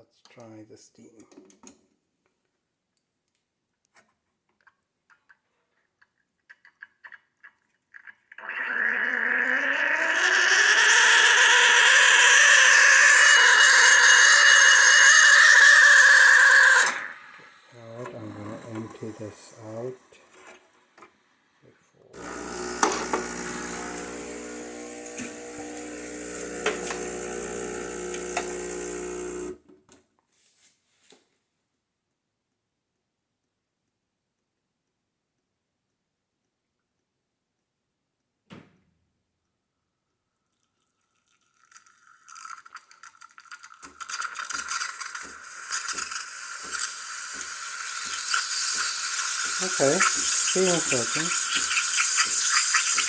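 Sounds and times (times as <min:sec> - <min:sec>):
espresso machine pump buzzing: 0:09.4 - 0:19.9, 0:22.2 - 0:29.6, 0:43.8 - 0:53.0
steam wand hissing: 0:22.2 - 0:29.5, 0:44.4 - 0:53.0.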